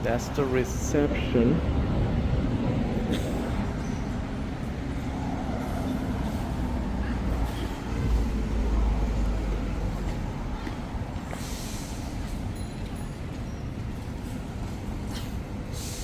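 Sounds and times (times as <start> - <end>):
city traffic rumble: 0.0 - 16.0.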